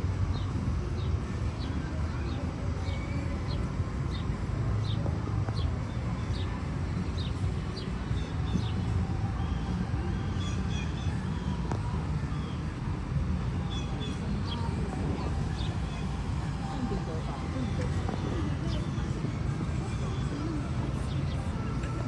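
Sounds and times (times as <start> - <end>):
city traffic rumble: 0.0 - 22.0
birds chirping: 0.3 - 22.0.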